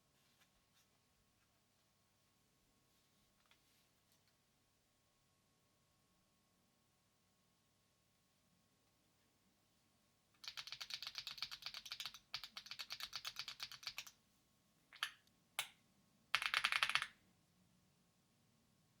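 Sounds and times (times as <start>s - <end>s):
mechanical keyboard typing: 10.4s - 14.2s, 16.4s - 17.1s.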